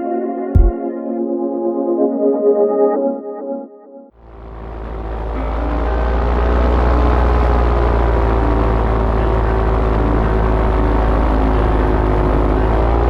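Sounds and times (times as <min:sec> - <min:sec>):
paramotor engine and propeller: 0:04.2 - 0:13.0.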